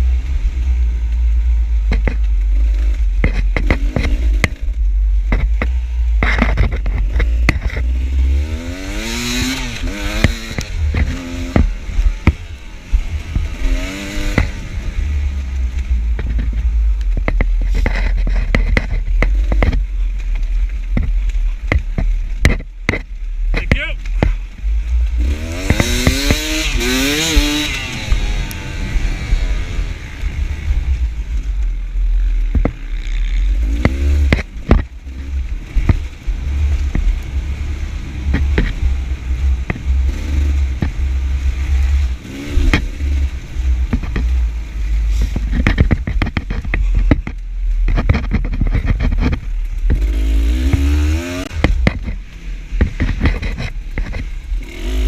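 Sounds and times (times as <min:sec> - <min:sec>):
dirt bike engine revving: 0:00.0 - 0:16.8, 0:21.2 - 0:47.2, 0:47.9 - 0:55.0
knocks and clatter: 0:01.8 - 0:14.8, 0:15.8 - 0:28.4, 0:32.4 - 0:37.4, 0:38.2 - 0:41.2, 0:41.9 - 0:44.5, 0:45.1 - 0:55.0.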